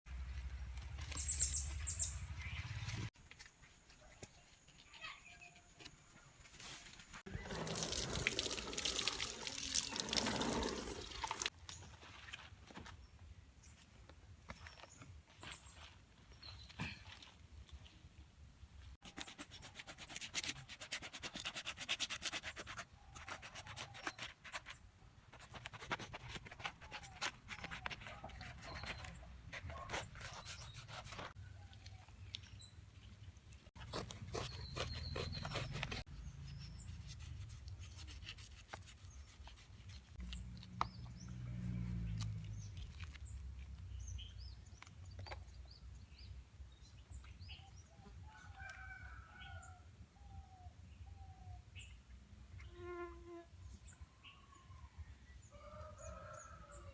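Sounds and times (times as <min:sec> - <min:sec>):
fruit crackling and rubbing by hand: 0:19.0 - 0:31.4, 0:33.7 - 0:45.4.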